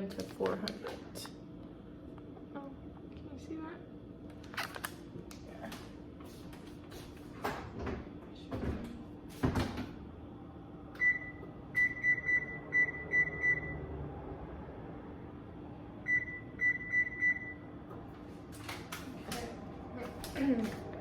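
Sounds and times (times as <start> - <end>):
oven control panel beeping: 11.0 - 13.8, 16.0 - 17.8.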